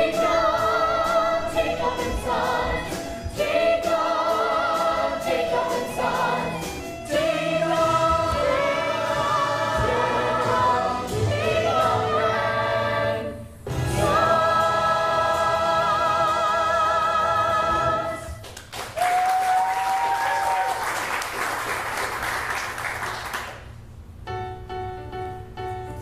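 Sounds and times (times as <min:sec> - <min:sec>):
chorus singing with accompaniment: 0:00.0 - 0:18.4.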